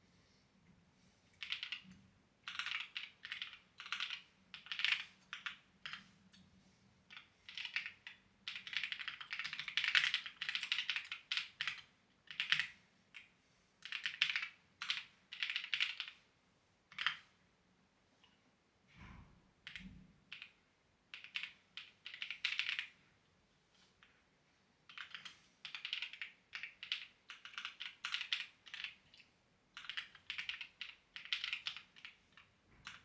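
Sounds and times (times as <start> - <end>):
mechanical keyboard typing: 1.4 - 1.9, 2.5 - 6.0, 7.1 - 16.2, 16.9 - 17.2, 19.6 - 22.9, 24.9 - 29.2, 29.8 - 33.0.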